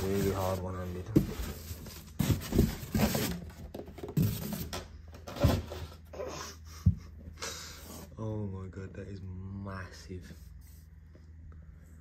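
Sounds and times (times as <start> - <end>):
cardboard packaging scraping: 0.0 - 6.0.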